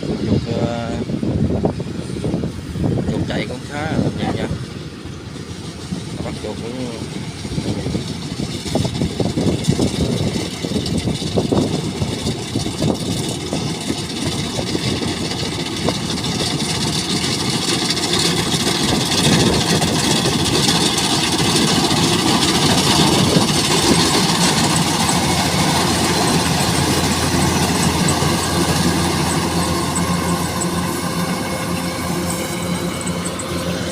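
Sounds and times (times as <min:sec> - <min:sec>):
combine harvester running: 0:00.0 - 0:33.9.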